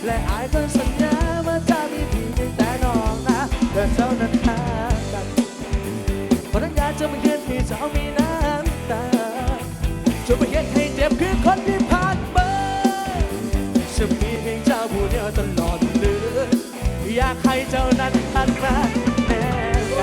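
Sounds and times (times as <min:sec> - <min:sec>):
drum kit beat: 0:00.0 - 0:20.0
wavering lead melody: 0:01.2 - 0:20.0.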